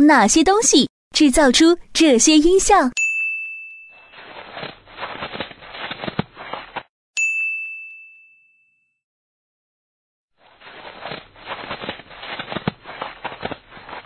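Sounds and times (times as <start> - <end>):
high chime ding: 3.0 - 4.2, 7.2 - 9.0.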